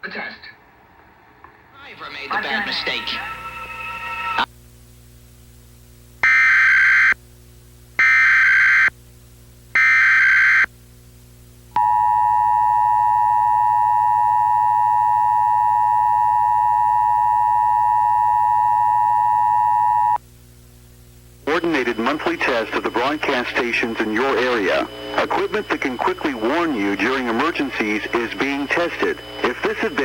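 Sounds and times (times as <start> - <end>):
two-tone attention tone: 11.8 - 20.2.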